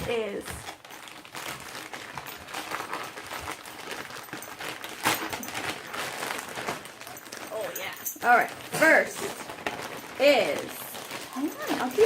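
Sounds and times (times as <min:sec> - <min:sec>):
packaging bag rustling: 0:00.0 - 0:12.0.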